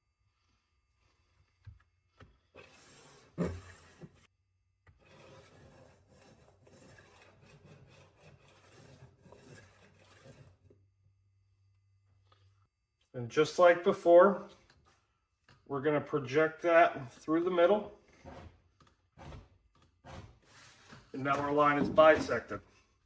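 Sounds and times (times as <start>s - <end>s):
tool scratching sheet metal: 4.9s - 10.7s, 17.0s - 22.8s.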